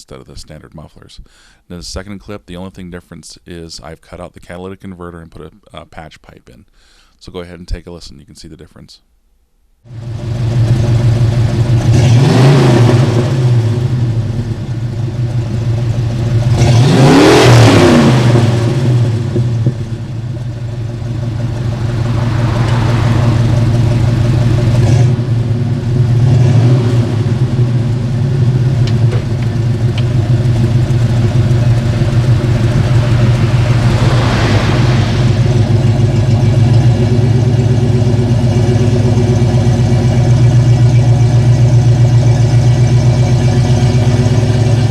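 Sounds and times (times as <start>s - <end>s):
car engine idling and revving: 9.8s - 44.9s.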